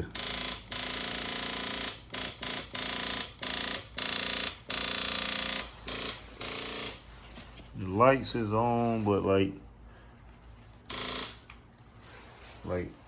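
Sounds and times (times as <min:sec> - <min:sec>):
motorcycle starter buzzing: 0:00.0 - 0:07.1, 0:10.9 - 0:11.6.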